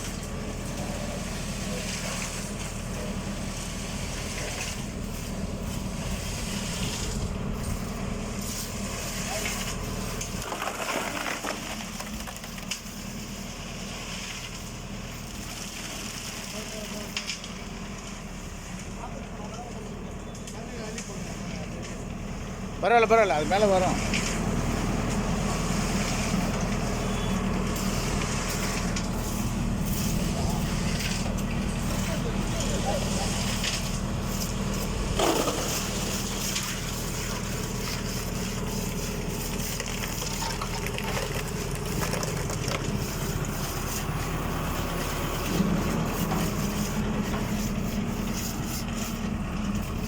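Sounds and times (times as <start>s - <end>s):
tractor diesel engine running: 0.0s - 15.6s, 22.0s - 50.0s
concrete mixer drum turning: 22.8s - 50.0s.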